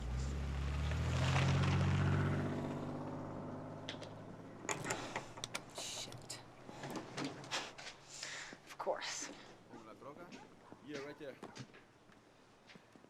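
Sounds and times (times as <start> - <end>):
vehicle engine running: 0.0 - 5.8
sharp clicks and knocks: 3.8 - 7.5.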